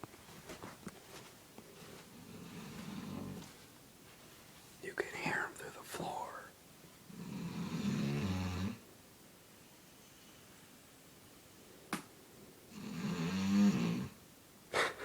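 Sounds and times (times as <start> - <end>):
man snoring: 7.2 - 8.8, 12.7 - 14.1.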